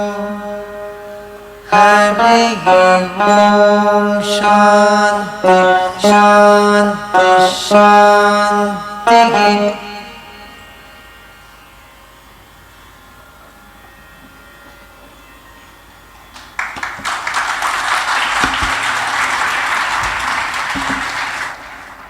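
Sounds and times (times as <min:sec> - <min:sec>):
veena notes ringing: 0:00.0 - 0:22.0
audience applause: 0:16.4 - 0:22.0.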